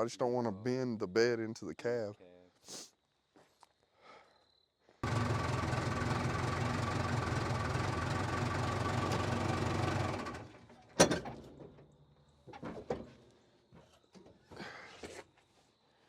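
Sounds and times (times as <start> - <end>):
power tool rattling: 5.0 - 11.7.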